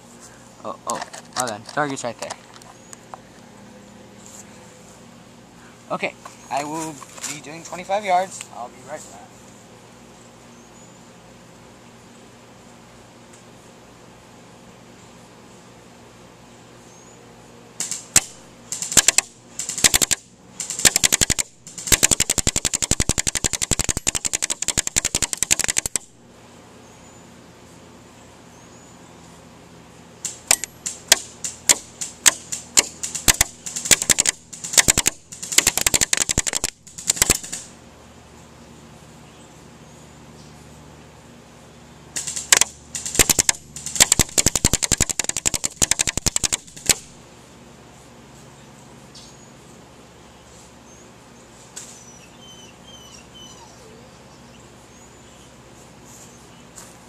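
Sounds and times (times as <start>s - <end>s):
airsoft rifle shots cracking: 17.8s - 26.1s, 30.2s - 37.7s, 42.2s - 47.1s
sharp tick: 17.8s - 26.1s, 30.2s - 37.7s, 42.2s - 47.1s
songbird chirping: 48.0s - 57.0s.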